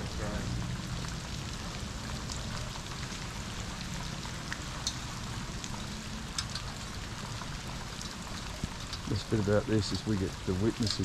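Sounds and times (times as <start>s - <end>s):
steady rain hiss: 0.0s - 11.0s.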